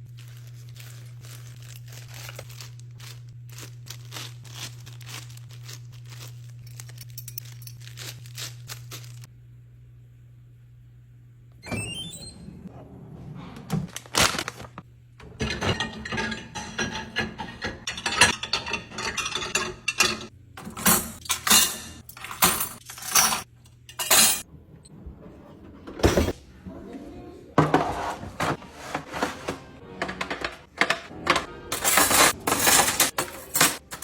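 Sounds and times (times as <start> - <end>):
glass jars clinking: 15.4 - 24.4.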